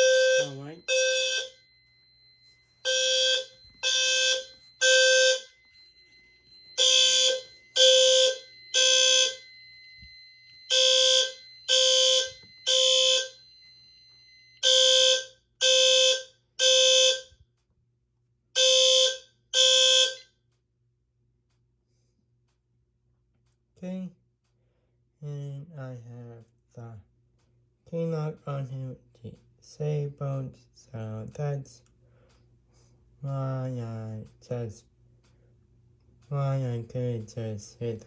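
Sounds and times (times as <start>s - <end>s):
fire alarm horn blasts: 0.0s - 17.6s, 18.5s - 20.5s.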